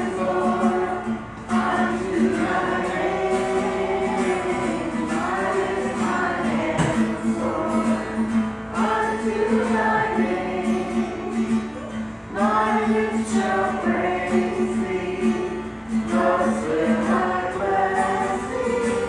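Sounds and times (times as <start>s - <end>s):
group singing a gospel song: 0.0s - 19.0s.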